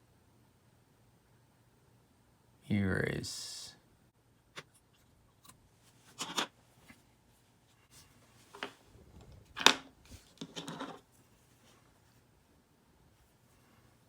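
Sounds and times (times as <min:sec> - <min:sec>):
scratchy clicks and rubs: 0:10.1 - 0:11.0.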